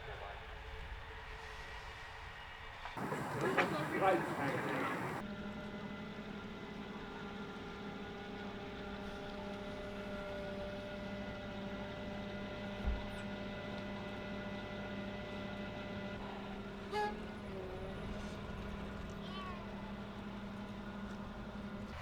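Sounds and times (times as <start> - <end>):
steady machine hum: 3.0 - 5.2.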